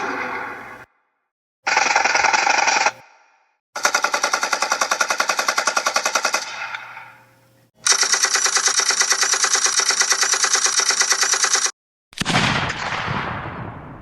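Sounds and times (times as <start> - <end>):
automatic gunfire bursts: 1.7 - 3.0, 3.8 - 7.1, 7.8 - 12.8.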